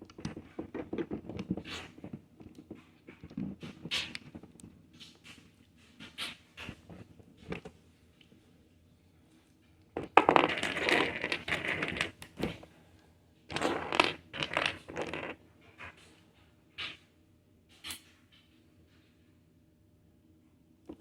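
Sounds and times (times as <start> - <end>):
plastic lego pieces clattering: 10.0 - 12.6, 13.5 - 15.4.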